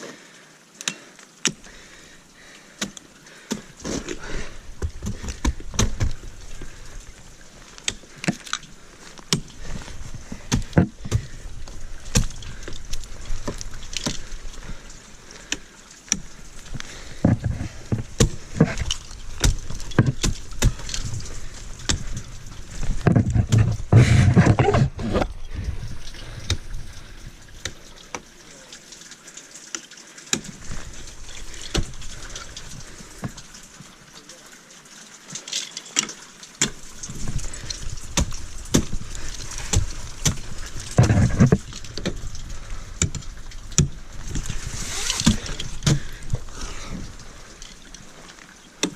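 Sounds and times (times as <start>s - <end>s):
ice tools knocking and scraping ice: 2.8s - 26.7s, 30.3s - 33.5s, 35.3s - 48.2s
clothing and gear rustling: 3.0s - 28.4s, 35.1s - 48.8s.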